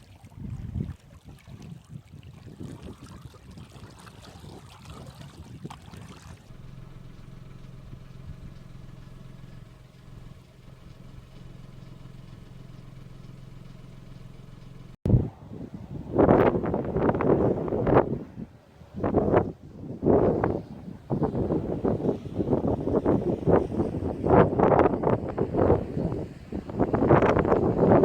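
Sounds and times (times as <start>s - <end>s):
water: 0.0s - 12.9s, 15.1s - 28.0s
wind: 0.0s - 28.0s
low engine hum: 6.2s - 28.0s.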